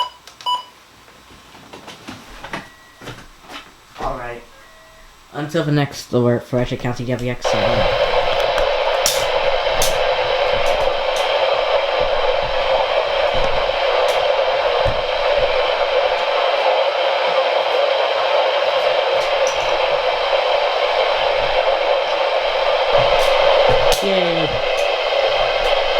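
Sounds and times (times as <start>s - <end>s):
radio static hiss: 3.0s - 25.9s
sharp crackles: 6.8s - 16.8s, 18.6s - 25.9s.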